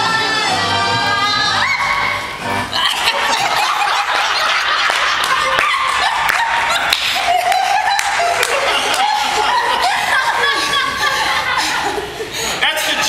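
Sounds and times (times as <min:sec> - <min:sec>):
audience applauding: 0:02.8 - 0:10.4.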